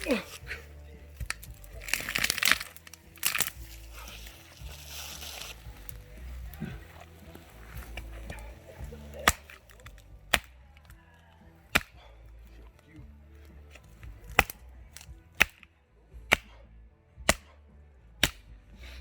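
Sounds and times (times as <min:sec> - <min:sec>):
axe chopping wood: 0:01.2 - 0:03.6, 0:07.8 - 0:10.9, 0:11.6 - 0:12.2, 0:13.7 - 0:15.7, 0:16.3 - 0:17.6, 0:18.2 - 0:18.5.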